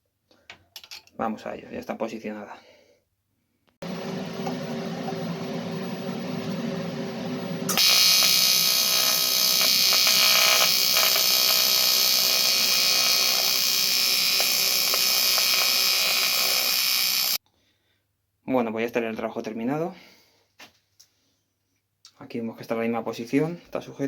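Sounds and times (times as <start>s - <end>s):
welding arc buzzing hiss: 3.8s - 17.4s.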